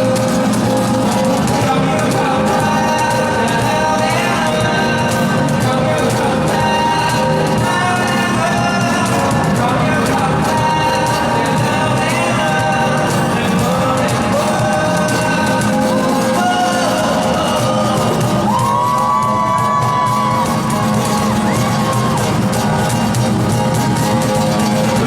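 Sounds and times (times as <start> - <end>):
rock band playing live: 0.0 - 25.0
audience whooping and cheering: 16.3 - 25.0.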